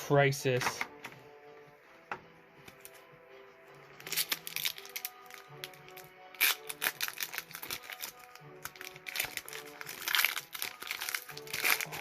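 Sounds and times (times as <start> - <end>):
background music: 0.0 - 12.0
foil pack crinkling: 4.0 - 12.0.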